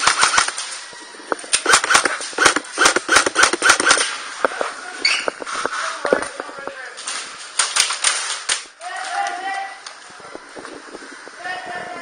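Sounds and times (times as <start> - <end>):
airsoft gun firing: 0.0 - 0.6, 1.6 - 4.1.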